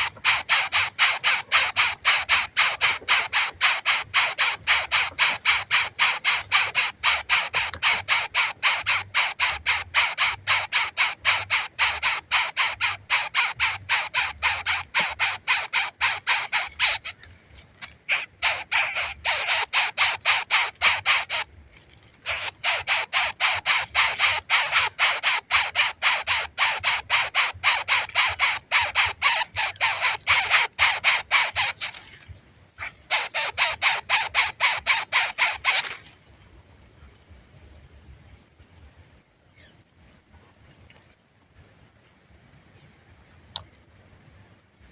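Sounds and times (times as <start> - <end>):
baby bird raspy begging calls: 0.0 - 17.2, 18.0 - 21.5, 22.2 - 32.0, 32.8 - 36.0.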